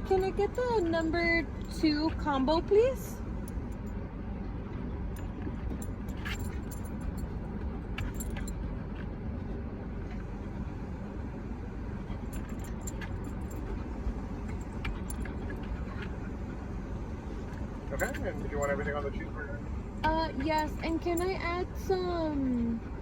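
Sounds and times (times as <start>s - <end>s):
light clicks and jingles: 0.0s - 2.4s, 3.3s - 4.1s, 5.1s - 9.1s, 12.1s - 16.2s, 17.5s - 19.3s, 20.2s - 21.5s
car engine idling: 0.0s - 9.0s, 10.4s - 23.0s.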